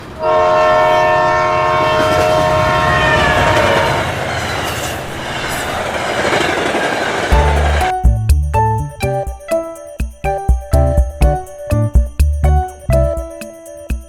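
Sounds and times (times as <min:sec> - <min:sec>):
train horn chord: 0:00.2 - 0:04.2.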